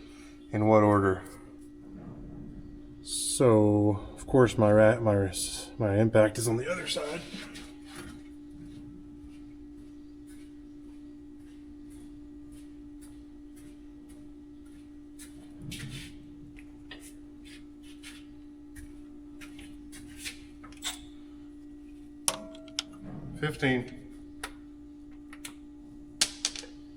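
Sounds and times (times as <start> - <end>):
steady hum: 0.0 - 26.9.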